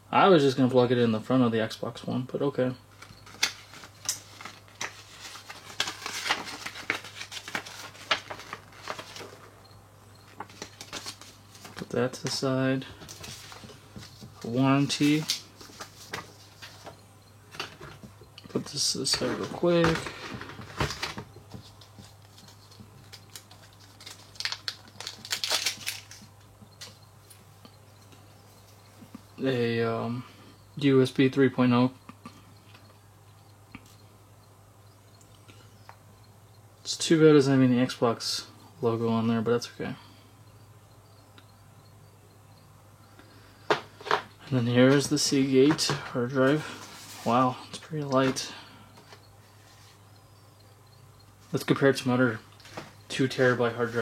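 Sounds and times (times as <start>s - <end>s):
paper rustling and crinkling: 2.9s - 9.5s, 10.3s - 16.9s, 17.5s - 26.3s, 44.9s - 47.5s.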